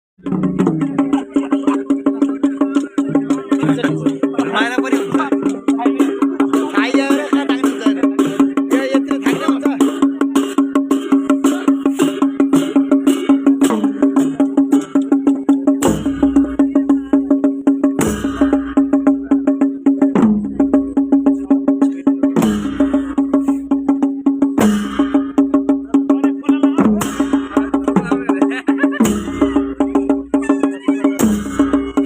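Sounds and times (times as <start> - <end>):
fast drum beat: 0.2 - 32.0
cymbals clashing: 26.9 - 28.0
held wind instrument tone: 30.3 - 32.0.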